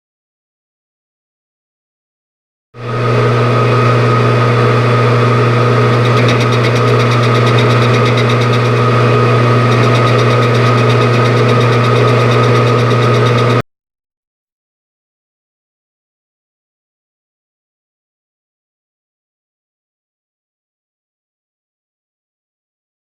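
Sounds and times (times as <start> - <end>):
high machine whine: 2.8 - 13.6
machine tool motor hum: 2.8 - 13.6
fast ticking of cutting: 5.3 - 13.6.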